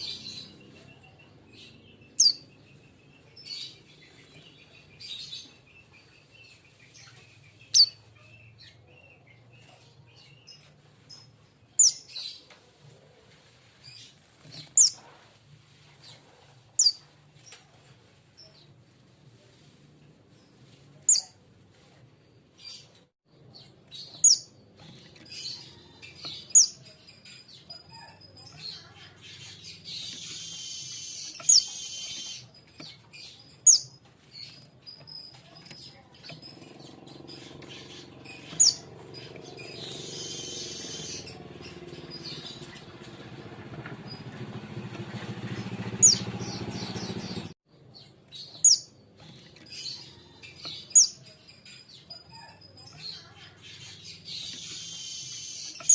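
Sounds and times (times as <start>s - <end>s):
rapid bird twitter: 25.2s - 43.2s, 44.1s - 47.6s, 49.7s - 55.9s
high falling bird chirps: 25.3s - 34.6s, 45.5s - 47.6s.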